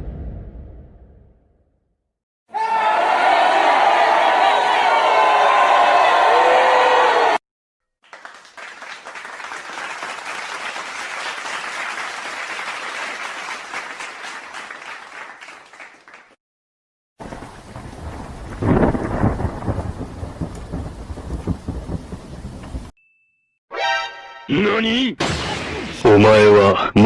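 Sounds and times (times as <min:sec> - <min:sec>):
rain: 0:17.2 - 0:22.9
rumbling thunderclap: 0:17.2 - 0:22.9.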